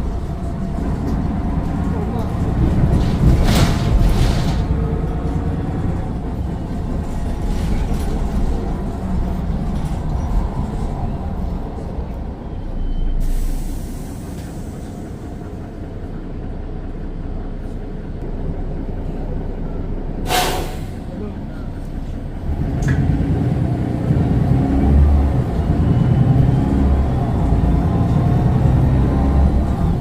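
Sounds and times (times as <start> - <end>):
diesel bus engine rumble: 0.0 - 30.0.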